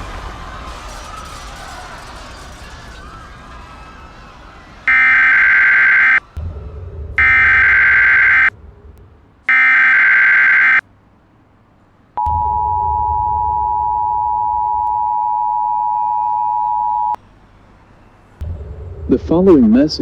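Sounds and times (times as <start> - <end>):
buzzing digital data tones: 4.9 - 6.2, 7.2 - 8.5, 9.5 - 10.8
two-tone attention signal: 4.9 - 6.2, 7.2 - 8.5, 9.5 - 10.8, 12.2 - 17.2.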